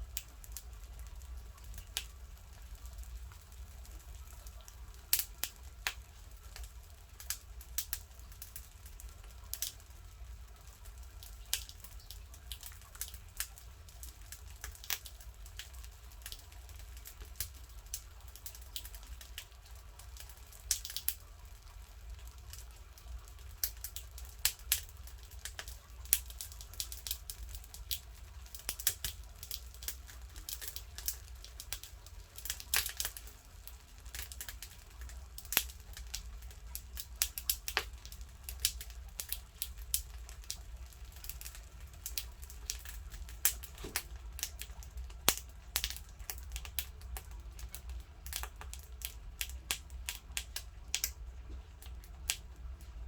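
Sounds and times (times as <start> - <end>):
firewood crackling and snapping: 0.1 - 9.8, 10.6 - 52.9.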